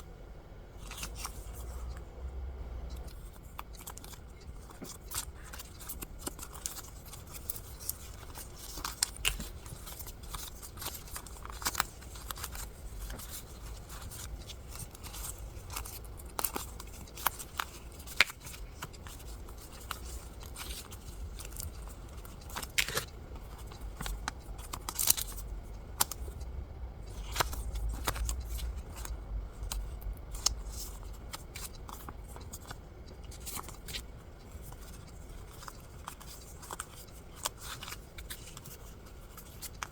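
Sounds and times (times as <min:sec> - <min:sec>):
paper and packaging rustling: 0:03.1 - 0:26.4.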